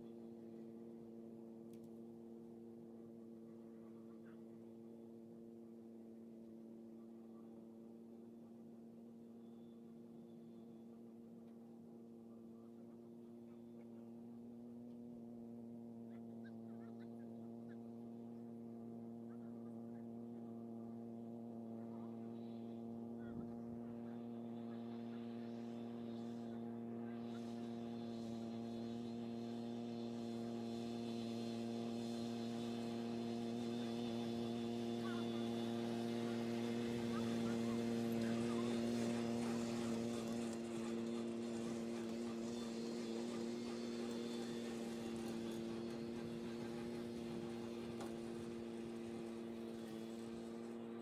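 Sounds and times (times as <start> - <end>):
steady motor hum: 13.0 - 51.0.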